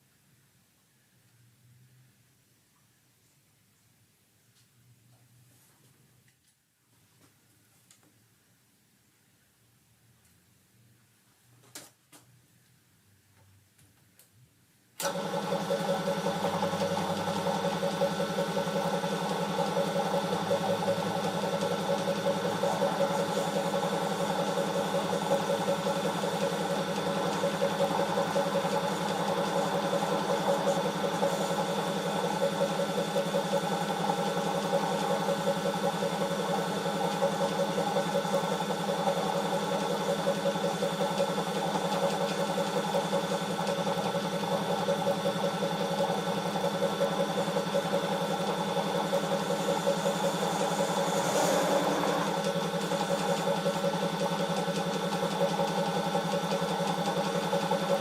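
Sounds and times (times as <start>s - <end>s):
motor machine humming: 15.0s - 58.0s.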